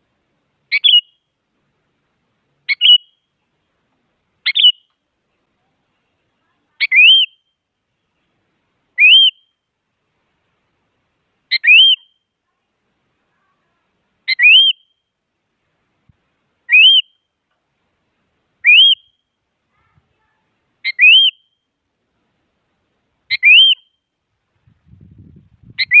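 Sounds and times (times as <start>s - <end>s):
bird giving rising whistled call: 6.8s - 7.4s, 9.0s - 9.5s, 11.5s - 12.2s, 14.3s - 15.0s, 16.7s - 17.2s, 18.6s - 19.2s, 20.8s - 21.6s, 23.3s - 24.0s, 25.8s - 26.0s.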